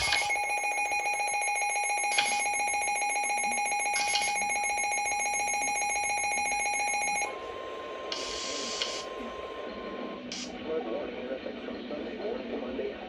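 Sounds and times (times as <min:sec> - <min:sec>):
two-tone alarm signal: 0:00.0 - 0:09.5.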